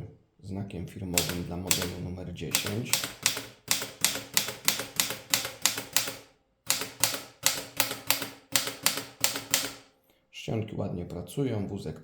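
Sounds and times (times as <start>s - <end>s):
manual typewriter typing: 1.2s - 9.8s.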